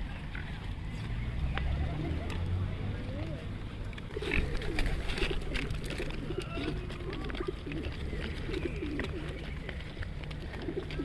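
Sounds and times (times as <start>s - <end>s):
birds giving low wavering calls: 4.1s - 11.0s.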